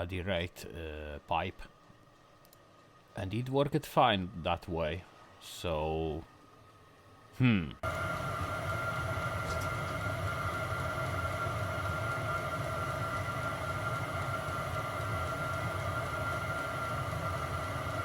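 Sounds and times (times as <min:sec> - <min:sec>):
diesel air heater running: 0:07.8 - 0:18.0.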